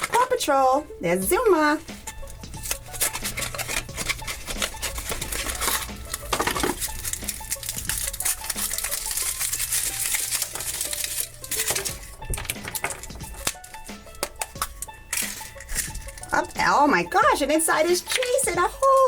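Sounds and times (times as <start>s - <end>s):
foil crinkling: 2.0s - 16.6s, 17.7s - 19.0s
plastic capsule clicks: 11.5s - 16.3s.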